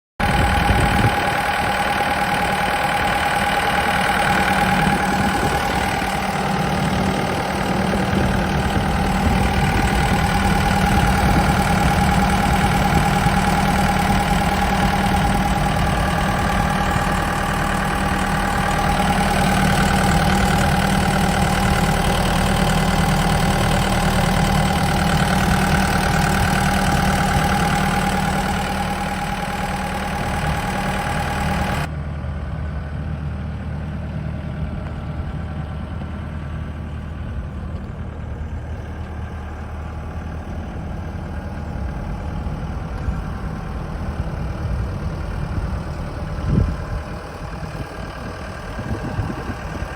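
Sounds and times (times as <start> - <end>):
steady whine: 0.2 - 32.1
excavator diesel engine idling: 0.2 - 49.9.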